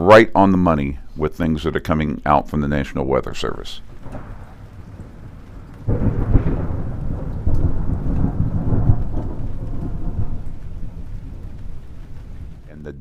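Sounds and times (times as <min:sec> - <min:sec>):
rain hissing: 0:00.1 - 0:13.0
thunder clap rumbling: 0:03.8 - 0:13.0.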